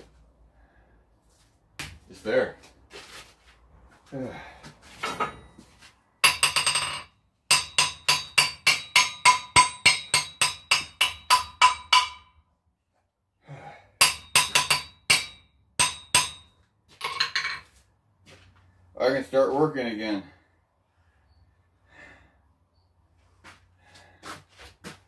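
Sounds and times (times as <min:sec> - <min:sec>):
hammer ringing on anvil: 0:06.2 - 0:12.4, 0:14.0 - 0:17.3.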